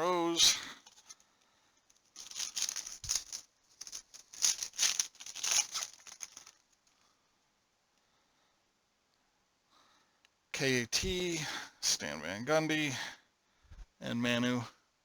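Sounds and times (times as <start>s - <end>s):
trading cards scraping together: 2.2s - 6.6s.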